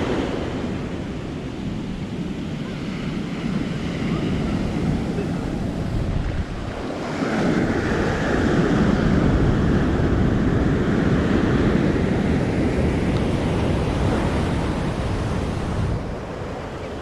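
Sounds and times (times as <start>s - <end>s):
surf washing onto beach: 0.0s - 17.0s
wind buffeting microphone: 0.0s - 17.0s.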